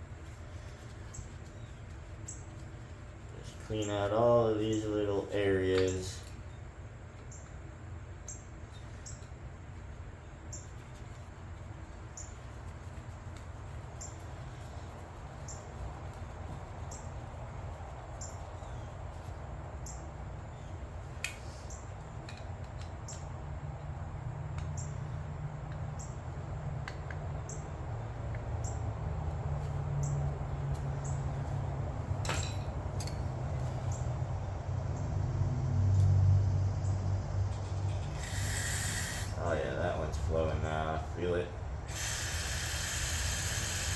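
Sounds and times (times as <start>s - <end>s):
low mechanical hum: 0.0s - 43.9s
faint regular ticks: 10.5s - 23.9s.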